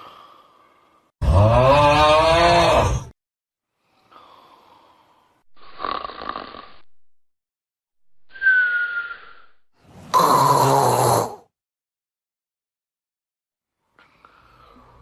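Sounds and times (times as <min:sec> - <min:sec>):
person snoring: 0:01.2 - 0:03.2, 0:04.0 - 0:07.0, 0:10.0 - 0:11.5
high whistling snore: 0:04.0 - 0:06.9, 0:08.3 - 0:11.4.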